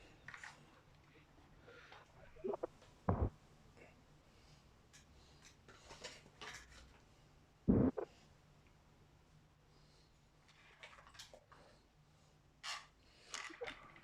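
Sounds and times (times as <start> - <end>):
dull thumps: 2.5 - 3.3
faint clicks and rustling: 10.4 - 11.9.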